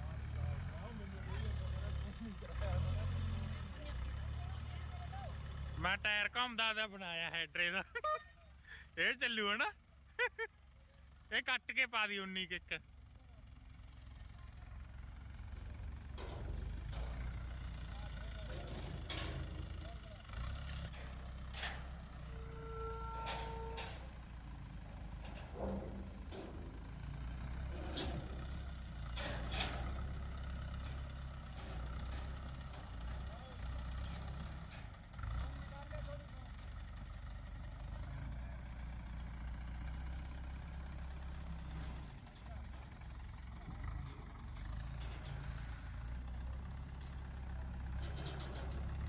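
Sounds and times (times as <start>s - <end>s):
concrete mixer engine droning: 12.2s - 49.0s
sharp metallic clanks: 21.0s - 24.1s
brief held tone: 22.4s - 23.9s.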